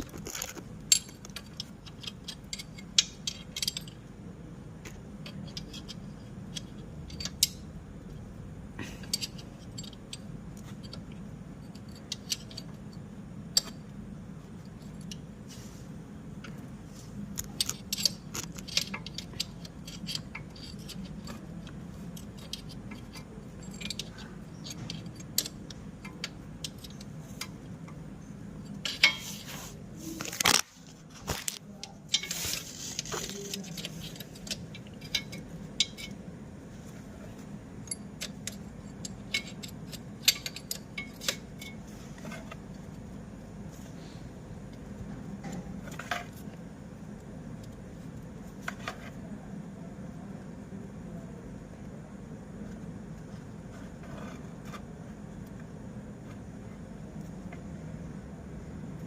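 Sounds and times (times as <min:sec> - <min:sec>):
steady low hum: 0:00.0 - 0:59.0
metal tools clinking and tapping: 0:00.3 - 0:04.1, 0:08.8 - 0:13.9, 0:17.4 - 0:29.5, 0:31.4 - 0:36.2, 0:37.8 - 0:42.9.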